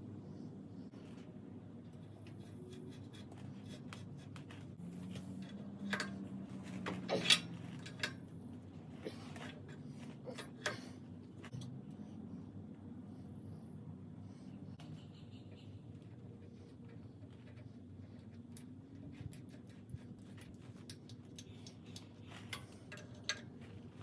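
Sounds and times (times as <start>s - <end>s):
steady low hum: 0.0s - 24.0s
metal fittings clicking and scraping: 5.1s - 6.2s, 18.3s - 24.0s.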